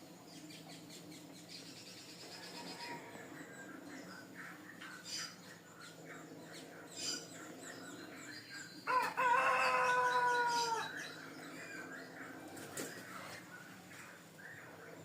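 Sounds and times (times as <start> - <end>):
small birds chirping: 0.0 - 15.0
rooster crowing: 2.4 - 3.2, 8.9 - 11.1.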